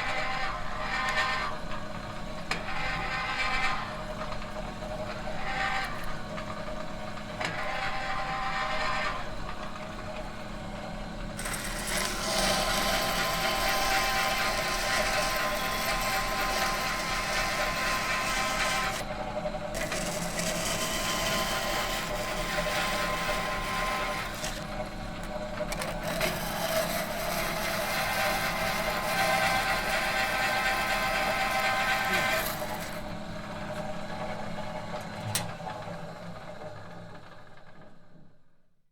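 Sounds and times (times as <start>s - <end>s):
metal machine humming and grinding: 7.4s - 36.0s.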